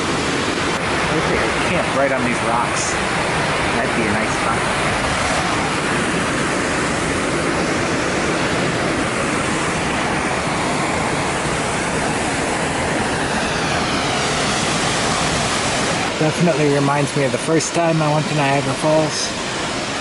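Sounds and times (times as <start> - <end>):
waterfall rushing: 0.0 - 20.0.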